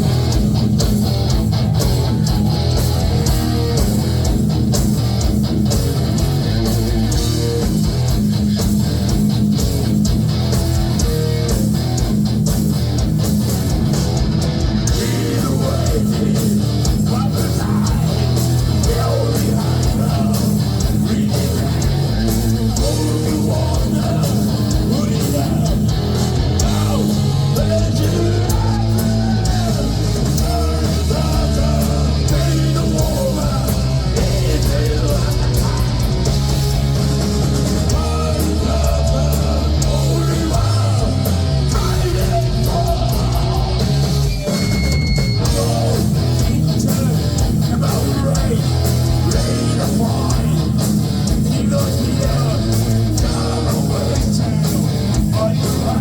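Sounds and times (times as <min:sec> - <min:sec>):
heavy metal band playing live: 0:00.0 - 0:56.0.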